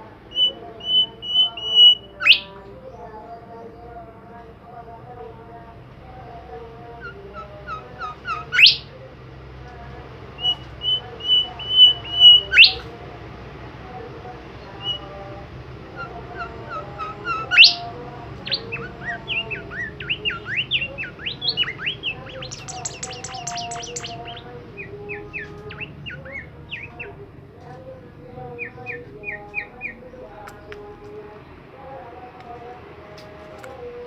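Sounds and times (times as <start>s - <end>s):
songbird chirping: 0.0s - 4.5s, 6.2s - 34.0s.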